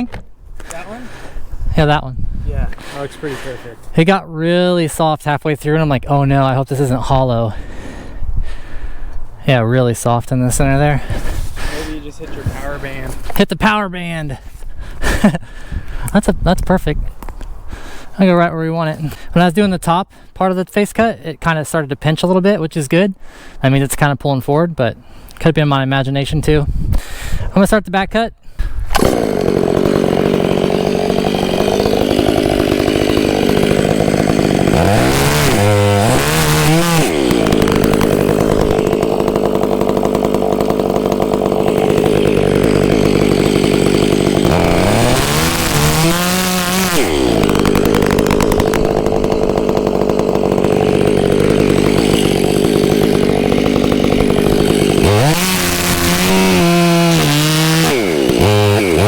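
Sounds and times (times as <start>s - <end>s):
chainsaw cutting through tree trunk: 0.0s - 3.9s, 10.6s - 16.2s, 28.7s - 59.0s.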